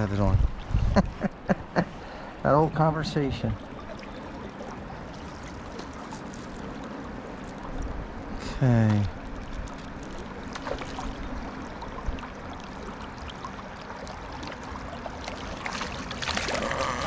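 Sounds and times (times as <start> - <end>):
fast-flowing river water: 3.5 - 8.4, 10.2 - 17.0.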